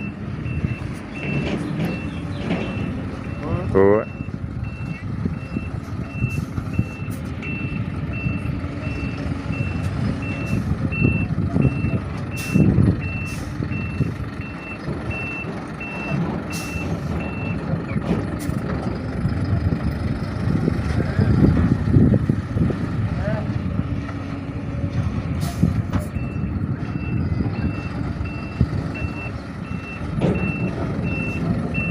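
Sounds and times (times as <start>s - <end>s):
reversing alarm beeping: 0.0s - 17.6s, 26.1s - 31.9s
diesel engine running: 0.0s - 31.9s.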